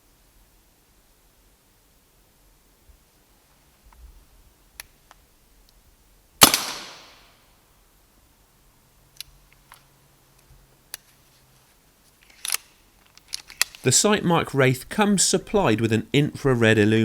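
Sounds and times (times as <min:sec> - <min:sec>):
faint clicks: 0:04.8 - 0:05.8
air rifle shot: 0:06.4 - 0:07.3.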